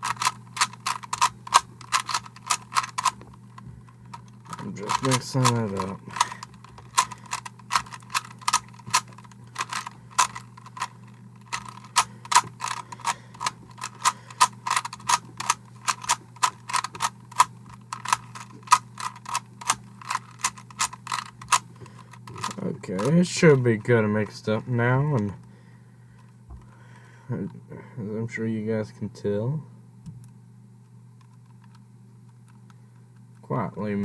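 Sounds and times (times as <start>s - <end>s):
puzzle cube clicking as turned: 0.0s - 23.2s.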